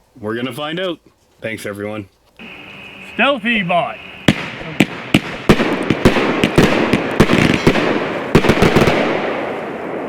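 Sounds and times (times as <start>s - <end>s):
firework bangs: 2.4s - 10.0s
firework hiss: 2.4s - 10.0s.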